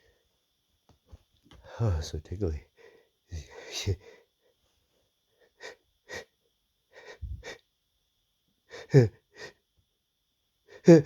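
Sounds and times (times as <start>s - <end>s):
man's wheezy in-breaths: 5.4s - 7.6s, 8.7s - 9.6s.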